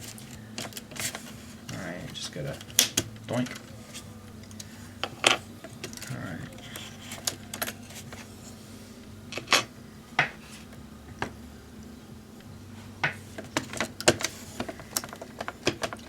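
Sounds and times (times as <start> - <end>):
low steady hum: 0.0 - 16.0
laptop parts clicking: 13.4 - 16.0.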